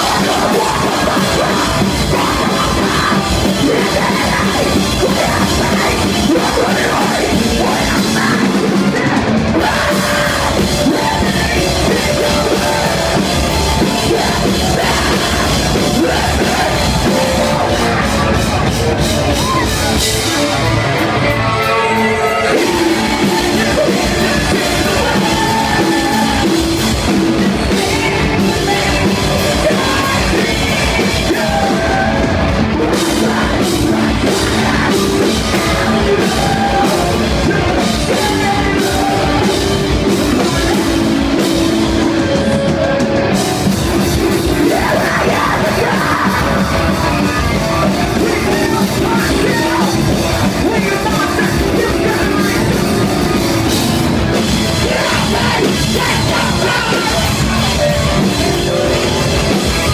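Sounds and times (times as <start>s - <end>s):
live rock band playing: 0.0s - 59.9s
sung and yelled vocals: 0.0s - 59.9s.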